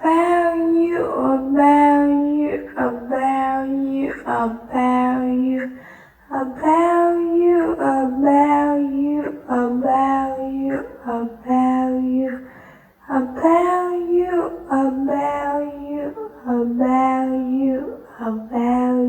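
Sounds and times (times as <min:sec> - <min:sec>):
high solo voice singing: 0:13.1 - 0:19.0.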